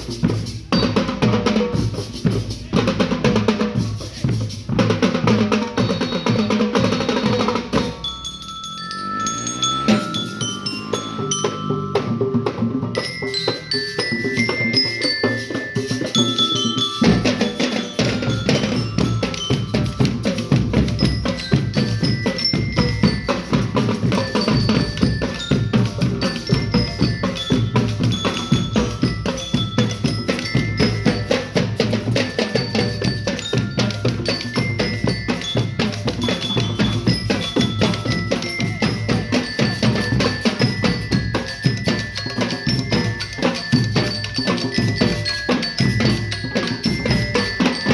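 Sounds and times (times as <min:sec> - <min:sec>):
marching drums: 0:00.0 - 0:47.9
bell lyre melody: 0:05.8 - 0:47.9.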